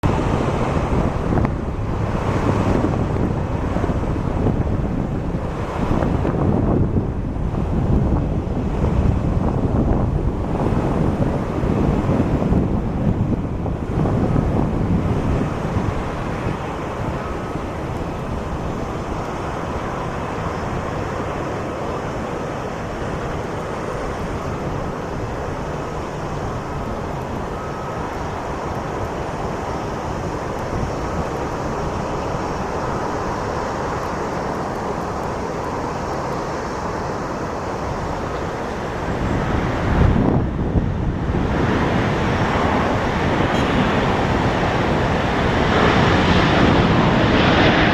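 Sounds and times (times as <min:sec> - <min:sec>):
jet engine rush with whine: 0:00.0 - 0:47.9
wind buffeting microphone: 0:00.0 - 0:47.9.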